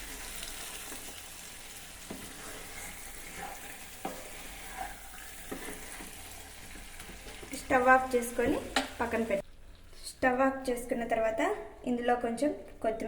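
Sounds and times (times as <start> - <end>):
curry sizzling in a pan: 0.0 - 9.4.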